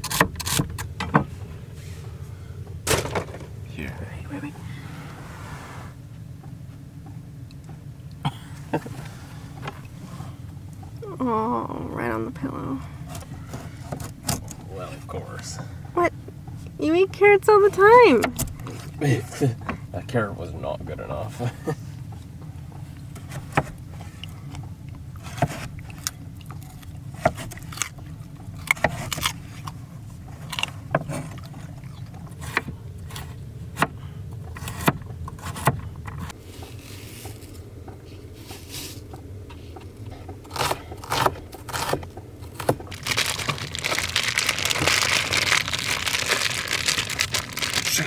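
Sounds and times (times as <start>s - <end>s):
low steady hum: 0.0s - 48.0s
rustling: 41.7s - 48.0s.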